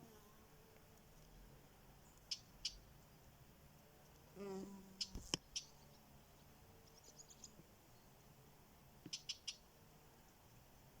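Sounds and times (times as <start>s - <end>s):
small animal chirping: 5.0s - 5.8s, 9.1s - 9.6s.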